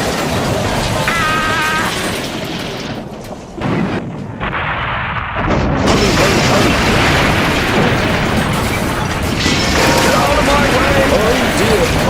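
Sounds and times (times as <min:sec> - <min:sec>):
crashing booming destruction rumble: 0:00.0 - 0:12.0.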